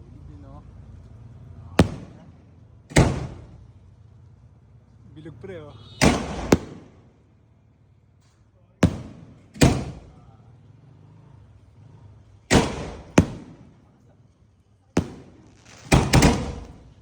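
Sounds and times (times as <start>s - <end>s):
firework shells bursting: 6.0s - 7.0s, 15.0s - 17.0s.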